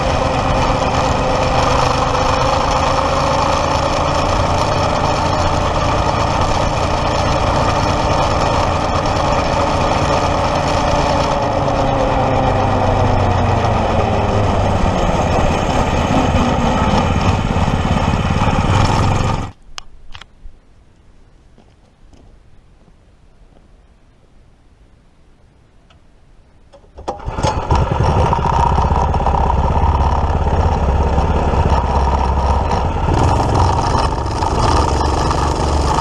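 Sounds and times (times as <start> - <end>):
small kart engine running: 0.0 - 19.6, 27.0 - 36.0.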